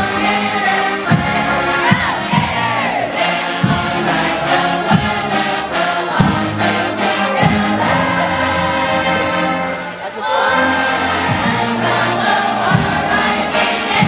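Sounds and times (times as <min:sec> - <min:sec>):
brass holding loud chords: 0:00.0 - 0:14.0
bass drum hits: 0:01.0 - 0:02.8.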